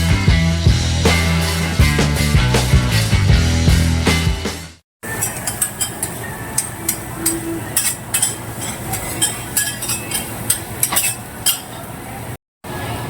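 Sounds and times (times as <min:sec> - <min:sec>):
background din: 0:05.0 - 0:11.7
metal utensils clinking and scraping: 0:05.0 - 0:11.9.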